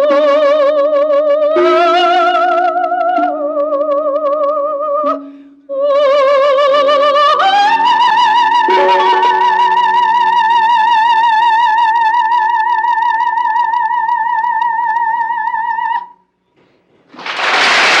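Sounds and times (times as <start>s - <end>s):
soprano singing high note: 5.1s - 12.2s
low accompaniment chord: 7.8s - 11.4s
loud rush of noise: 17.2s - 18.0s.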